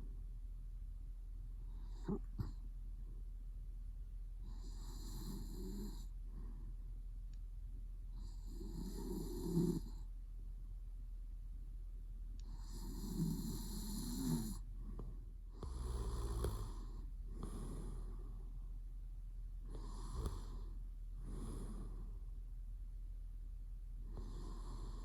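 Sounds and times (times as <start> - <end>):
man snoring: 4.5 - 6.1, 8.2 - 10.0, 12.5 - 14.6, 15.6 - 18.2, 19.7 - 22.0, 24.1 - 25.0.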